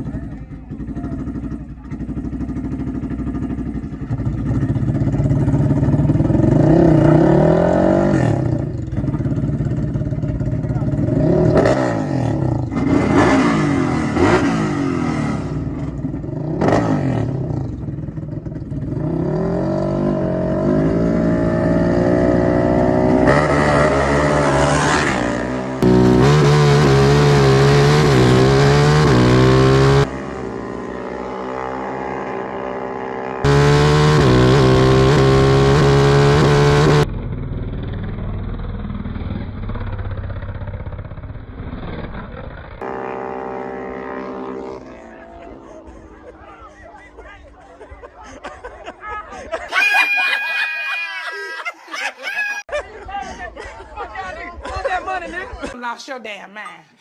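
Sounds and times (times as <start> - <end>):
atv engines revving: 0.0 - 53.8.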